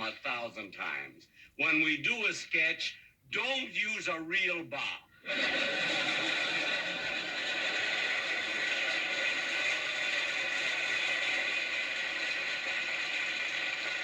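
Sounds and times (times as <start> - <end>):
studio audience applauding: 5.7 - 14.0.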